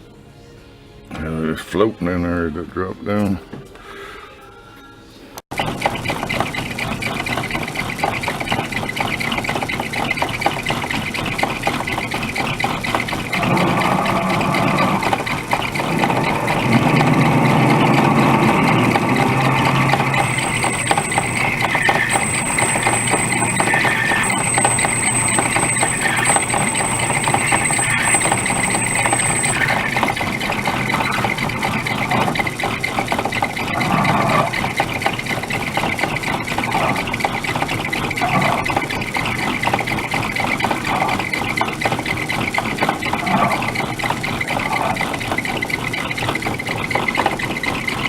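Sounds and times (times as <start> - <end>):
lathe motor whirring: 6.4 - 33.8
faint high whine: 14.2 - 32.3.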